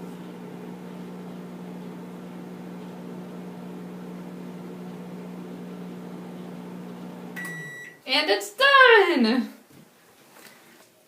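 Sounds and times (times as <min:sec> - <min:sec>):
microwave oven humming: 0:00.0 - 0:08.0.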